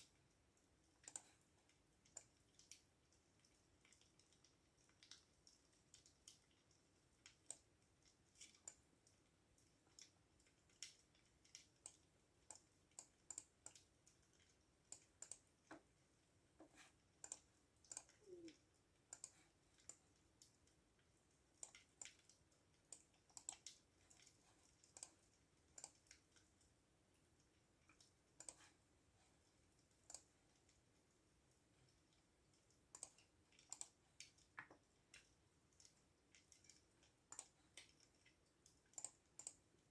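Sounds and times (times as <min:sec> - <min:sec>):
faint keyboard typing: 0:00.0 - 0:39.9.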